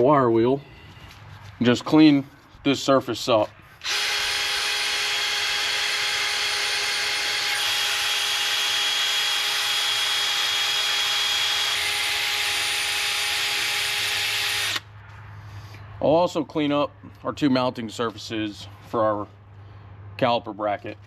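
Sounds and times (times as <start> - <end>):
motor whine: 3.8 - 14.9.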